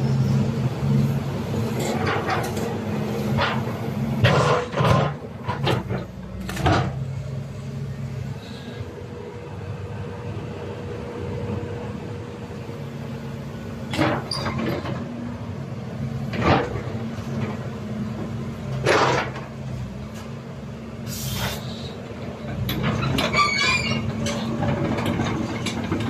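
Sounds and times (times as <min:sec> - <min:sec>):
excavator diesel engine running: 0:00.0 - 0:26.0
short hiss: 0:21.0 - 0:21.9.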